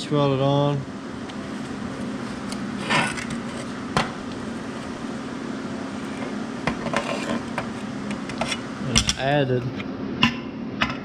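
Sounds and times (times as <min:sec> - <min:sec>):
steady low hum: 0:00.0 - 0:11.0
metal scraping: 0:02.4 - 0:03.8, 0:06.0 - 0:08.7.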